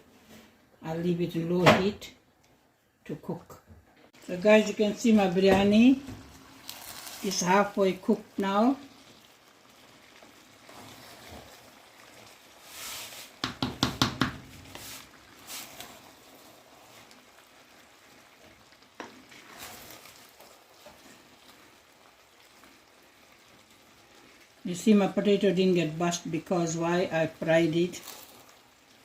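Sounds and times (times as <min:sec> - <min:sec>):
pot simmering with faint hiss: 0:00.0 - 0:29.0
metal knocks and clatter on pot: 0:13.4 - 0:14.5.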